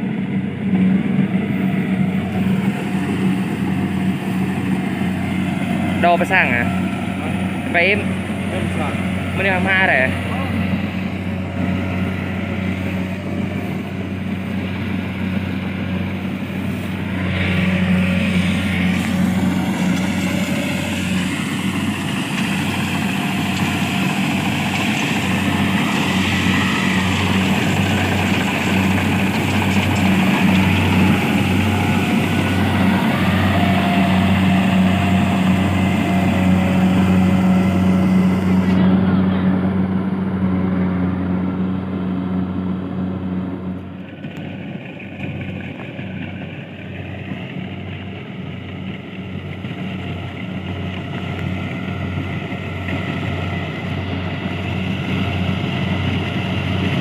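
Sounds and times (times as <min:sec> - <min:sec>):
small engine running: 0:00.0 - 0:57.0.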